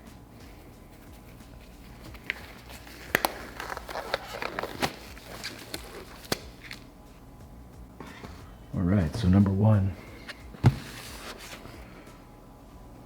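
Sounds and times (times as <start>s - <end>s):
rubber gloves rustling and crinkling: 0.3s - 7.3s, 10.2s - 12.1s
rubber gloves snapping: 2.1s - 6.9s.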